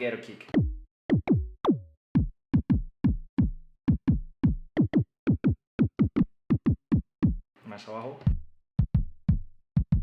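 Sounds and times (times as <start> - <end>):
synthesized kick drum booms: 0.5 - 7.4.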